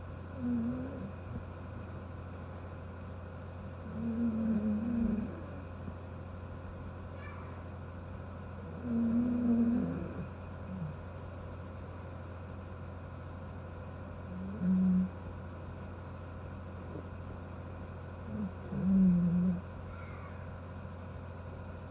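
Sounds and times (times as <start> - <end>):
dog snoring: 0.3 - 2.7, 3.6 - 5.9, 8.6 - 11.2, 14.2 - 15.4, 16.7 - 19.7.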